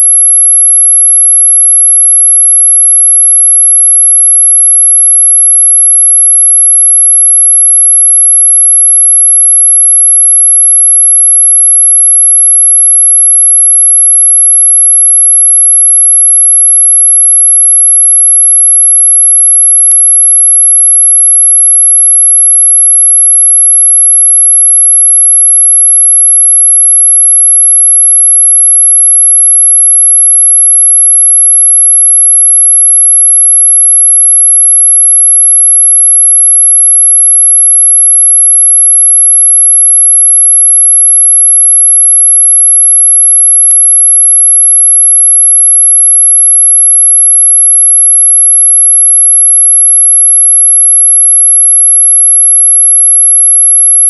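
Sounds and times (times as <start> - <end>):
high-pitched pure tone: 0.0 - 0.3.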